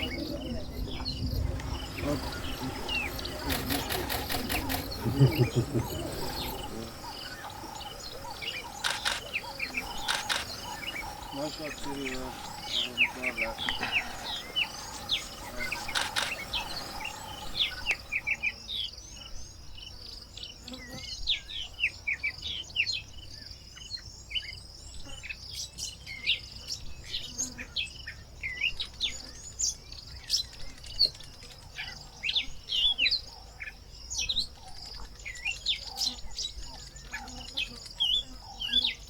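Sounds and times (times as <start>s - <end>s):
birds chirping and whistling: 0.0s - 18.5s.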